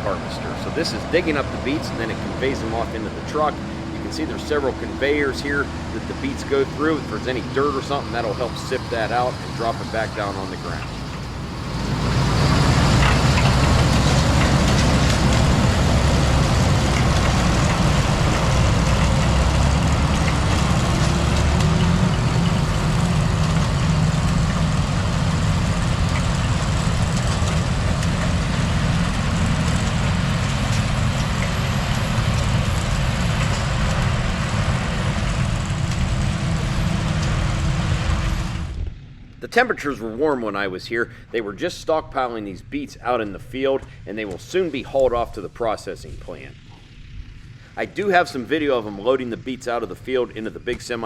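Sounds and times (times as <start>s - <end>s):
harvester clatter: 0.0s - 39.0s
tractor engine droning: 0.0s - 51.0s.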